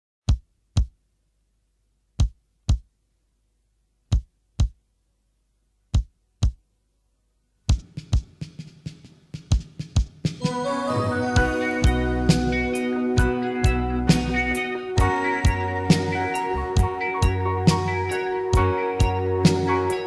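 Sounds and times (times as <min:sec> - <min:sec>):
reggae band playing: 0:10.4 - 0:20.0.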